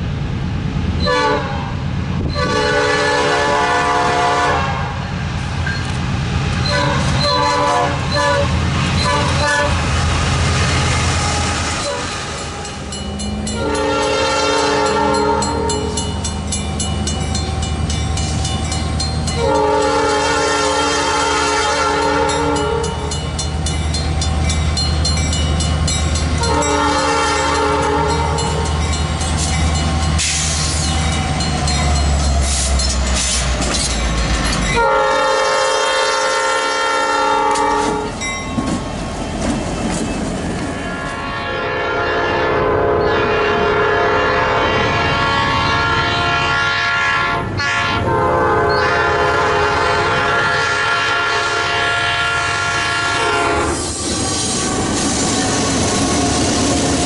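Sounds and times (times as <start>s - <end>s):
train horn chord blasts: 1.0s - 5.0s, 6.7s - 9.9s, 13.4s - 16.0s, 19.4s - 23.2s, 26.4s - 28.6s, 34.7s - 38.1s, 40.8s - 53.8s
wheels clacking on rails: 5.3s - 35.9s, 37.2s - 41.2s, 48.6s - 57.0s.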